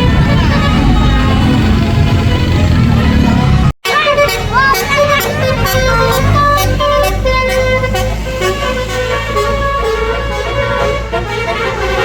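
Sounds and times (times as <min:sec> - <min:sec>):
bus engine rumble: 0:00.0 - 0:12.0
musical bus horn playing a tune: 0:00.0 - 0:12.0.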